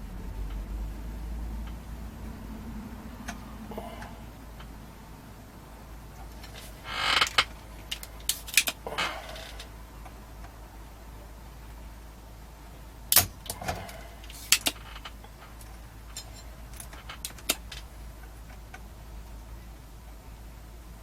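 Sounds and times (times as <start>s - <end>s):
metal hand tools clinking: 16.1s - 17.8s.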